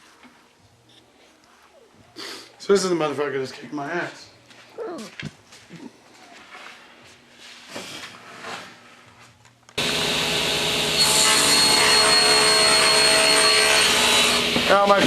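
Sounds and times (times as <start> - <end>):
electric saw cutting wood: 9.8 - 14.9.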